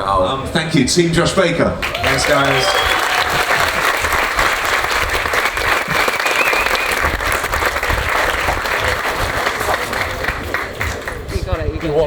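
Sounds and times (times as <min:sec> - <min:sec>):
audience applauding: 0:01.8 - 0:12.0.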